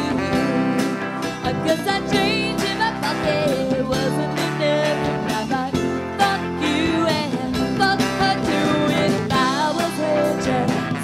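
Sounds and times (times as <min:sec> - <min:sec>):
live band playing pop-soul: 0:00.0 - 0:11.0
person singing: 0:01.4 - 0:11.0.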